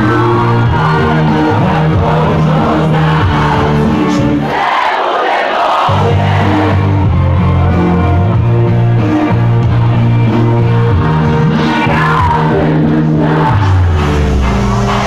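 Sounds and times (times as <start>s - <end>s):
person singing: 0.0s - 4.5s, 9.1s - 15.0s
loud amplified music with bass: 0.0s - 4.8s, 5.8s - 15.0s.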